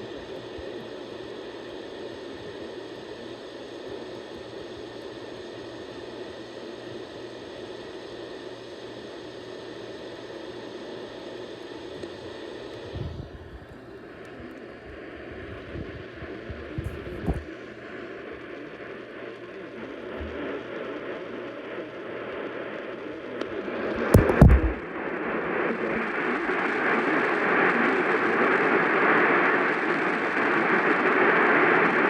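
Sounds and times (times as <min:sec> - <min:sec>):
faint hum: 0:00.0 - 0:27.7
radio static hiss: 0:12.0 - 0:21.0, 0:21.6 - 0:28.4
low thumps: 0:24.0 - 0:24.8.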